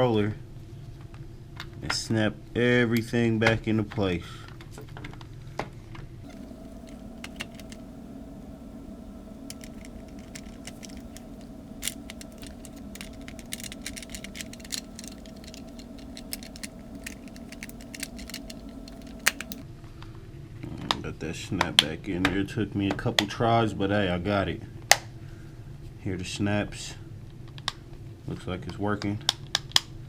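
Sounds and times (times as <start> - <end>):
steady low hum: 6.2 - 19.6
plastic controller shell clicking: 6.3 - 19.6.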